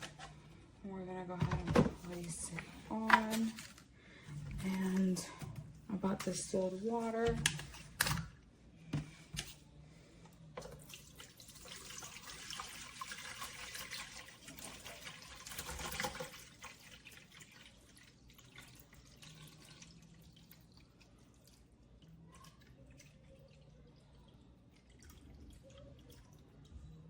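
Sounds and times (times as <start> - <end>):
faint water drips: 10.6 - 27.0
water pouring into tank: 10.8 - 26.7.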